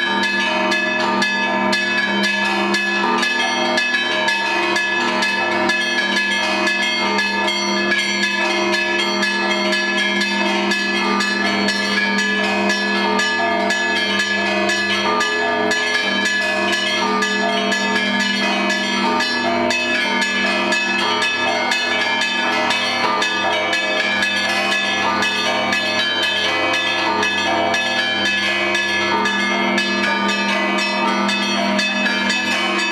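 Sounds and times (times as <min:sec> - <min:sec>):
deep bells humming: 0:05.2 - 0:32.9
small bells struck quickly: 0:11.6 - 0:32.9.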